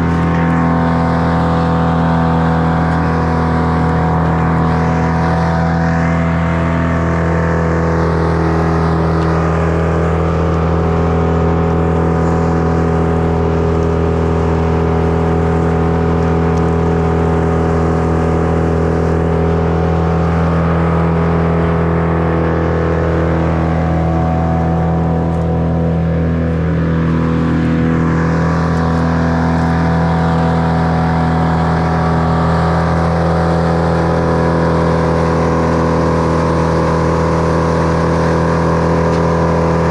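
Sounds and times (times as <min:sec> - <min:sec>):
gas engine running steadily: 0:00.0 - 0:39.9.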